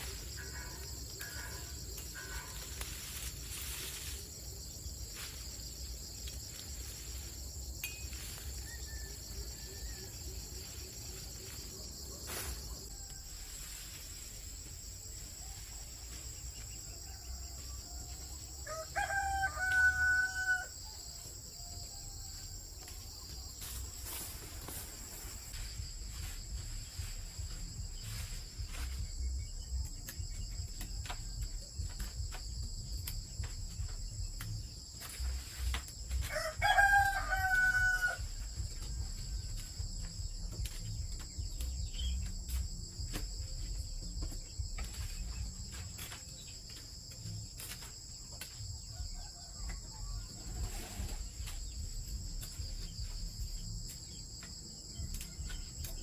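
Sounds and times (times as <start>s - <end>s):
crickets droning: 0.0s - 56.0s
rooster crowing: 8.4s - 10.5s, 16.8s - 22.7s, 36.2s - 38.6s, 48.8s - 51.3s.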